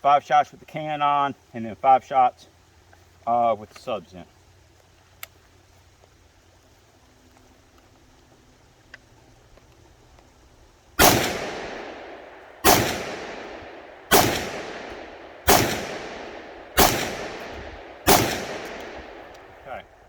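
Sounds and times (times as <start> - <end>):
rifle shots with echo: 11.0 - 19.8.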